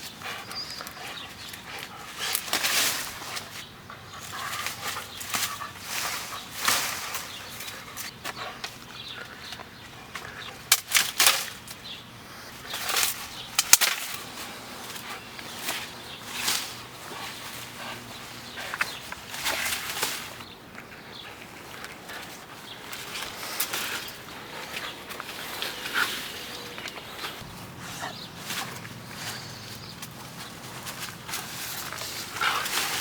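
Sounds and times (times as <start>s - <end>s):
leafy branches rustling and shaking: 0.0s - 33.0s
twigs snapping: 9.5s - 11.9s, 12.5s - 18.1s.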